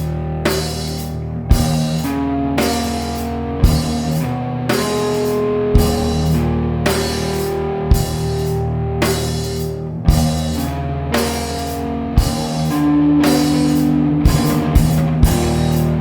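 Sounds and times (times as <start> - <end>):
grunge rock music: 0.0 - 16.0
heavy drum hits: 12.2 - 16.0.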